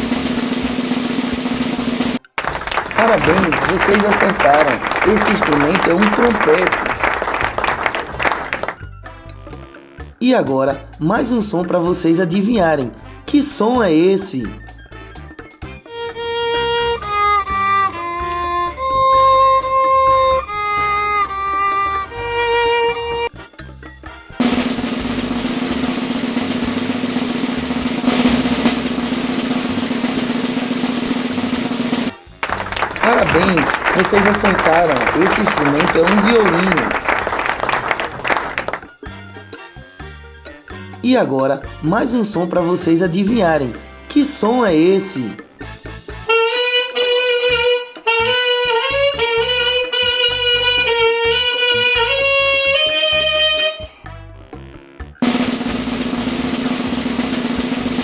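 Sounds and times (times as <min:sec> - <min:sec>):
saxophone melody: 0:46.0 - 0:53.8.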